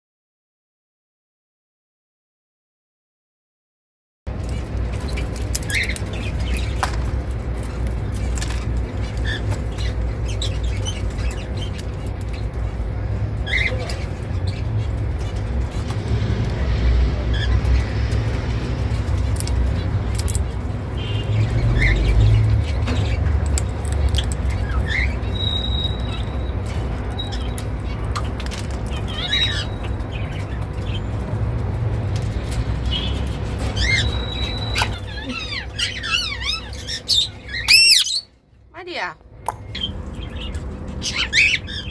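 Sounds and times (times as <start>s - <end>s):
parrot cracking seed shells: 4.4s - 9.3s, 19.1s - 20.6s, 23.4s - 24.8s
seeds cracking in beak: 19.4s - 20.4s
soft bird chirps: 23.8s - 31.2s, 32.4s - 41.9s.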